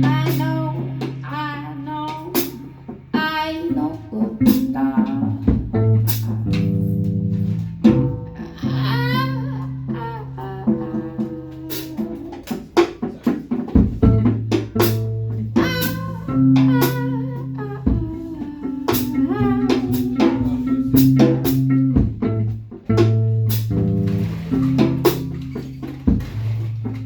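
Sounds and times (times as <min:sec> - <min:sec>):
bass guitar notes: 0:00.0 - 0:27.0
guitar melody: 0:00.0 - 0:27.0
drum kit hits: 0:11.7 - 0:17.2, 0:17.9 - 0:27.0.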